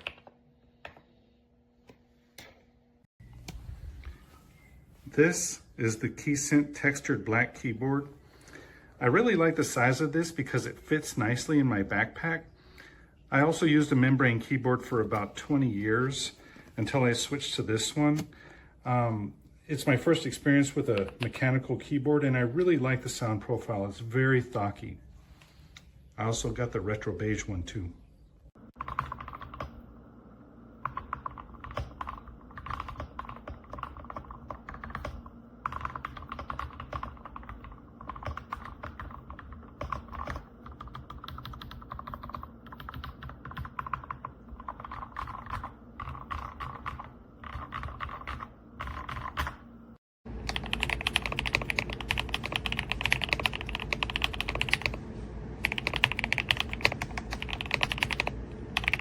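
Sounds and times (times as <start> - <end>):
fast typing on mechanical keyboard: 28.8 - 29.8, 30.8 - 49.6, 50.4 - 55.0, 55.6 - 59.0.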